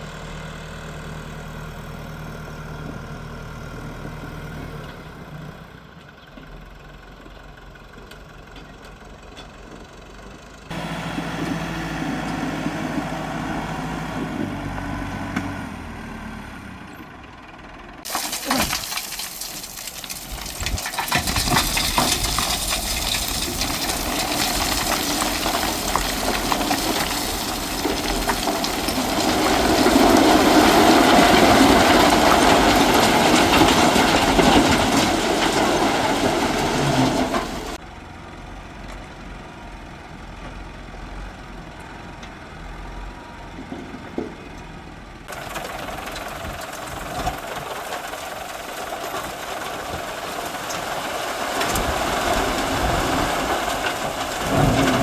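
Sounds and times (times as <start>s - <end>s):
engine running: 0.0s - 55.0s
noisy rush with rattling and scraping: 18.1s - 37.8s, 45.3s - 55.0s.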